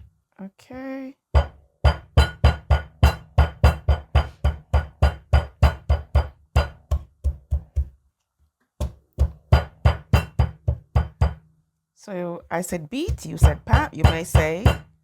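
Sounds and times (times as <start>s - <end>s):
bottle pounding ginger thuds: 1.4s - 8.0s, 8.8s - 11.4s, 12.9s - 15.0s.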